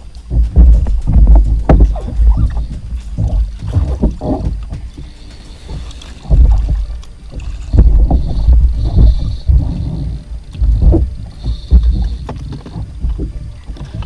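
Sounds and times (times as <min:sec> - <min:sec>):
low rumbling bumps: 0:00.0 - 0:14.0
water sloshing against kayak hull: 0:00.0 - 0:14.0
sharp knocks on boat: 0:00.3 - 0:14.0.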